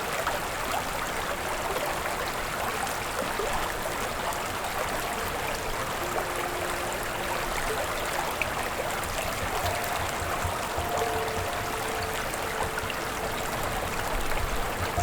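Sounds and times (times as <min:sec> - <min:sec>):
stream water rushing: 0:00.0 - 0:15.0
faint held tones: 0:05.1 - 0:15.0.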